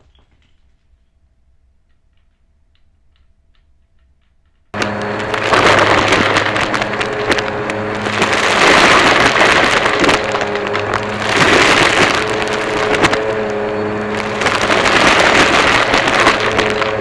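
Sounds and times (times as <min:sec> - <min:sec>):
vacuum cleaner running: 0:04.8 - 0:17.0.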